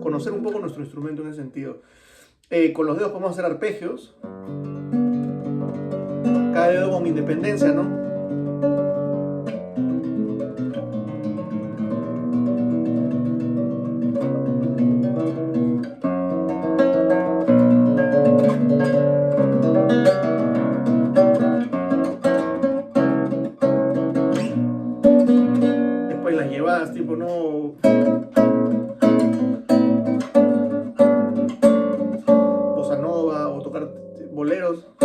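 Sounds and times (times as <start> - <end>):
fingerpicked acoustic guitar: 4.2 - 35.0.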